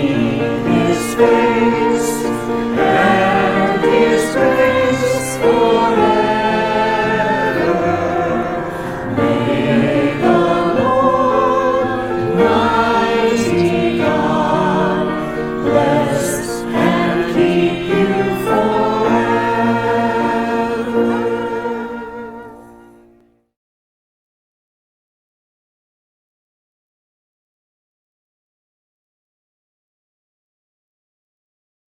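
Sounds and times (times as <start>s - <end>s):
choir singing: 0.0s - 23.2s.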